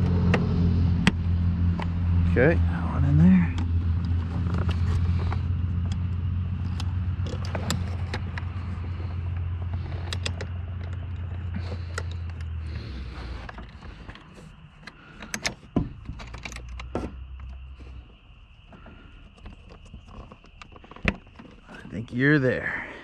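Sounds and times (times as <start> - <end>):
low steady hum: 0.0 - 23.0
plastic and metal parts clicking: 3.5 - 8.6, 9.8 - 12.6, 13.4 - 17.6.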